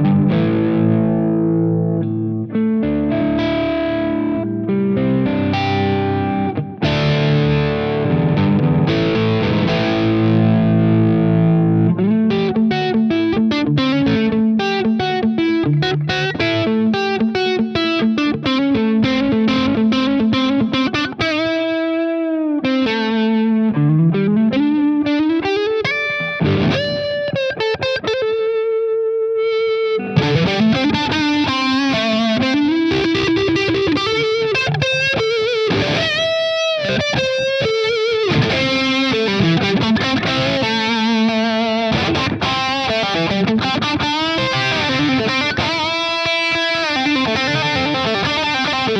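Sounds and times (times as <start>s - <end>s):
distorted electric guitar runs: 2.9s - 20.8s, 26.1s - 27.4s, 30.0s - 48.9s.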